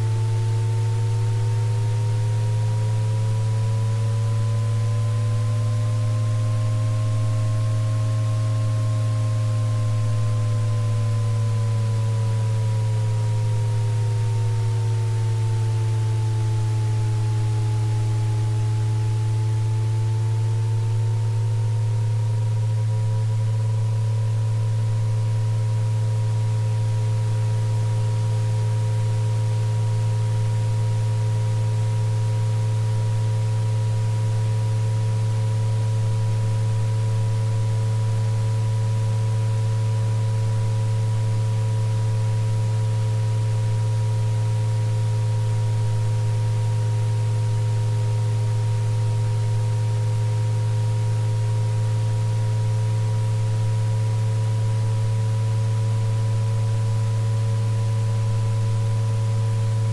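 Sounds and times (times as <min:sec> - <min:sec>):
low hum-like tone: 0:52.0 - 0:59.9.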